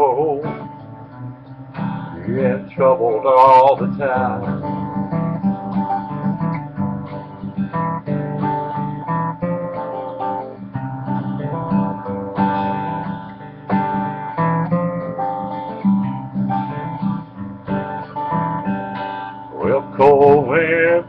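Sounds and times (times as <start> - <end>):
acoustic guitar strumming: 0.0 - 21.0.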